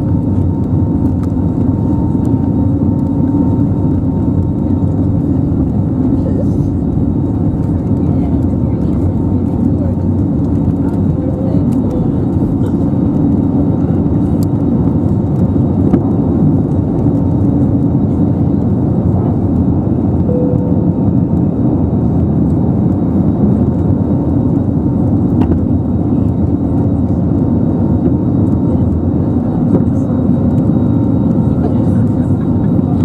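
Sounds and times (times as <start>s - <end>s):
airliner cabin rumble: 0.0s - 33.0s
faint hum: 20.2s - 22.6s.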